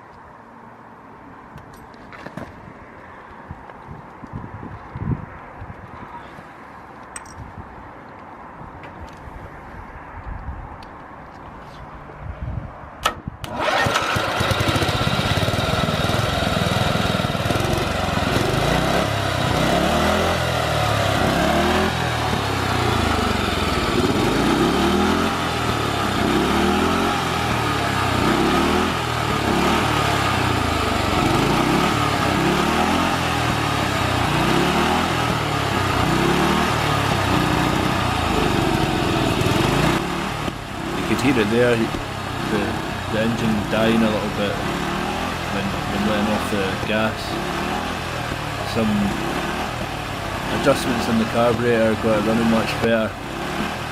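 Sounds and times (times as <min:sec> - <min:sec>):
ride-on lawnmower engine revving: 0:13.4 - 0:53.9.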